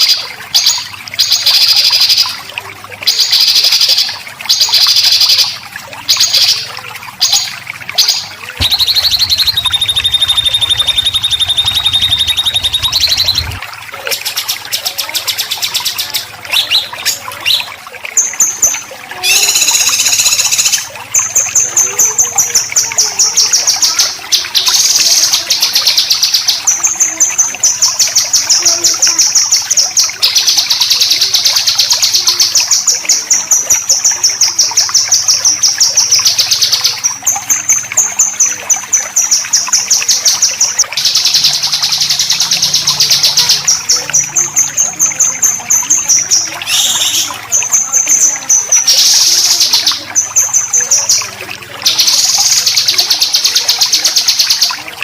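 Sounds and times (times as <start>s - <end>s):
songbird fast rattling trills: 8.0s - 13.6s.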